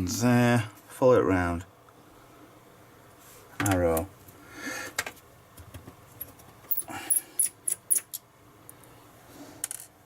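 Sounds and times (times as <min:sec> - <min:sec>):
screwdriver ticks and squeaks: 0:06.7 - 0:08.2.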